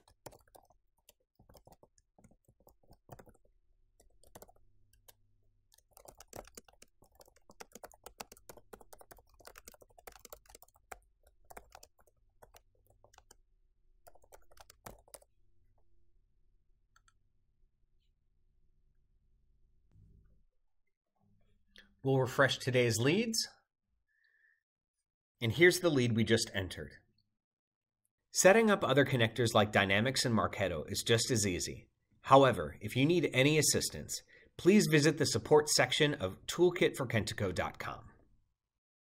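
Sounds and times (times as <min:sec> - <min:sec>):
keyboard typing: 0:00.0 - 0:13.4, 0:14.0 - 0:15.3.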